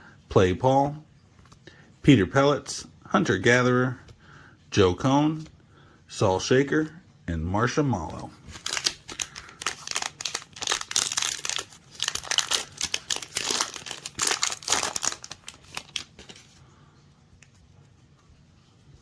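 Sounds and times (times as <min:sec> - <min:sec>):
plastic wrapper tearing and crinkling: 0:08.5 - 0:16.5.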